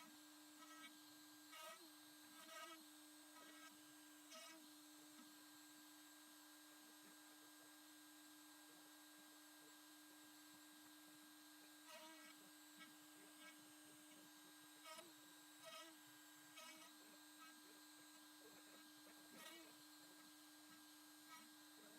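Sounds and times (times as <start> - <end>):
router spindle whine: 0.0 - 21.9.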